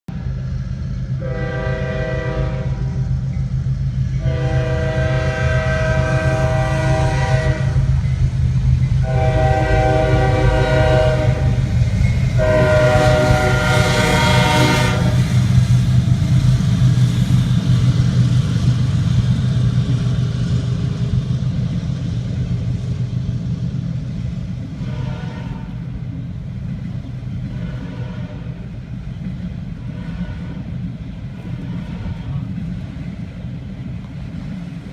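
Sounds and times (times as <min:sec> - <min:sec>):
diesel locomotives droning: 0:00.1 - 0:34.9
train air horn blasts: 0:01.2 - 0:03.2, 0:04.2 - 0:08.0, 0:09.0 - 0:15.4, 0:24.8 - 0:25.9, 0:27.5 - 0:28.7, 0:29.8 - 0:30.8, 0:31.4 - 0:32.6.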